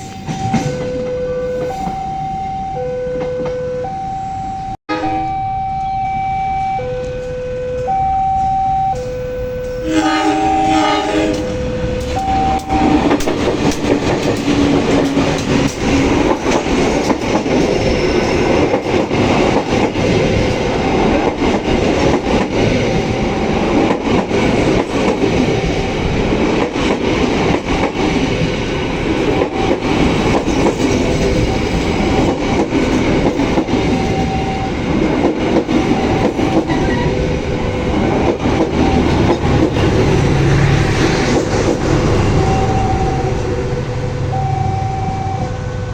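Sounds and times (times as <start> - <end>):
train horn: 4.9 - 5.9, 9.0 - 13.2
train wheels rumbling: 9.0 - 45.9
wheels clicking over rail joints: 12.0 - 42.5.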